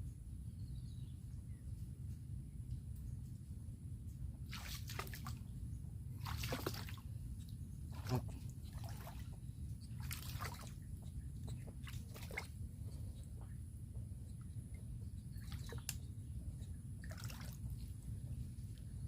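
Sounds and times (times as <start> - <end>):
steady low rumble: 0.0 - 4.5, 5.2 - 19.0
water splashing and sloshing: 4.4 - 5.5, 6.1 - 13.7, 14.7 - 18.8.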